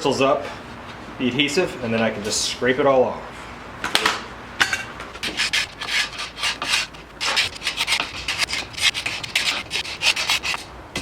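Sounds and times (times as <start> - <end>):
scraping adhesive off wood: 5.2 - 10.7.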